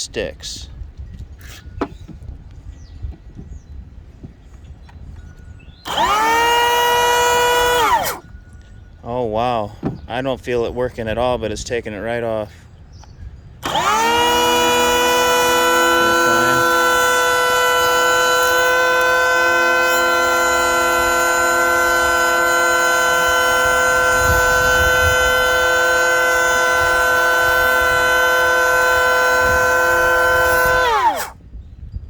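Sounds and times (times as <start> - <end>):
electric hand planer whining: 5.8 - 8.2, 13.6 - 31.4.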